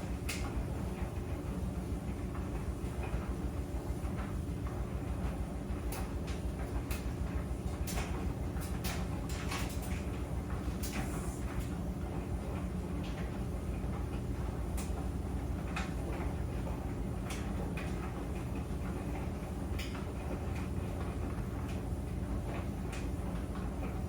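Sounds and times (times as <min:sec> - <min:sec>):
clothes dryer drum rumbling: 0:00.0 - 0:24.0.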